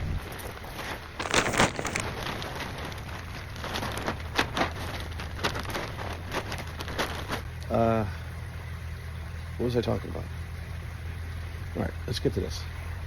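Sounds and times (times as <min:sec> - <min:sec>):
crackling plastic rustle: 0:00.0 - 0:07.6.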